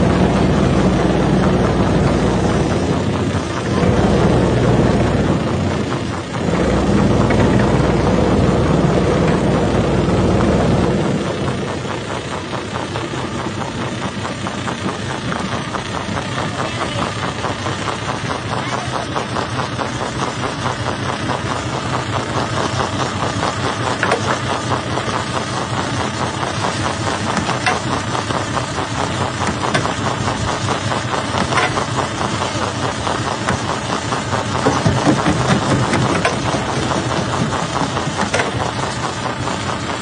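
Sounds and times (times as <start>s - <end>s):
rock crusher running: 0.0s - 40.0s.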